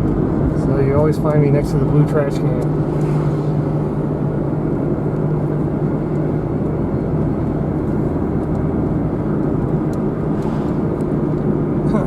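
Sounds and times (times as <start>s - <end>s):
car engine and tyres droning: 0.0s - 12.0s.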